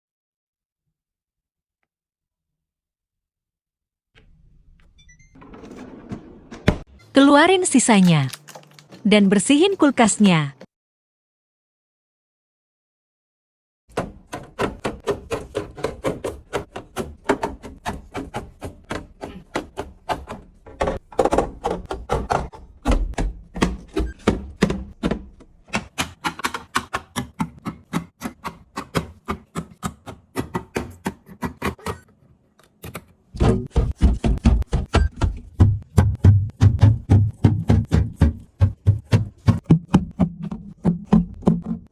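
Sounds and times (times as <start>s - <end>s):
plastic containers clicking and knocking: 13.9s - 32.0s, 32.7s - 41.9s.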